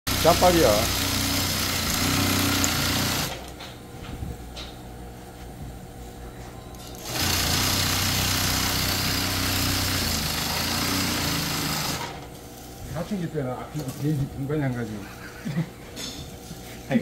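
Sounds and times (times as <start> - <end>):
industrial sewing machine running: 0.1 - 3.5, 7.0 - 12.3.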